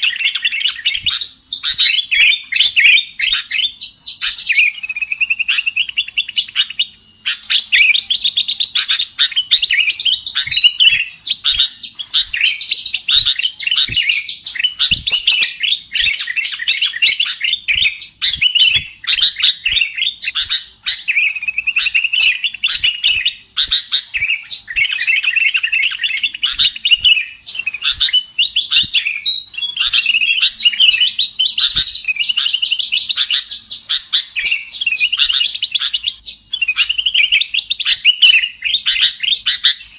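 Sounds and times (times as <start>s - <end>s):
bulbuls chattering calls: 10.3s - 36.2s.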